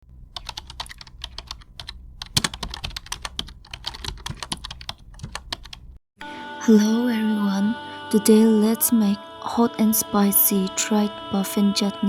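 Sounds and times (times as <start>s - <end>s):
rapid sharp clicks and taps: 0.4s - 5.8s.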